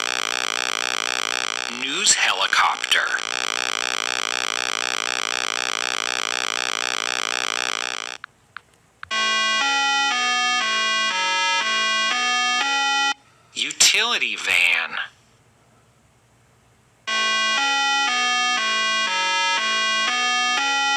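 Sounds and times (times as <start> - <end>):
electronic melody of stepped notes: 0.0 - 8.2, 9.1 - 13.2, 17.1 - 20.9
synthesizer buzzing tone warbling: 0.0 - 8.2, 17.1 - 20.9.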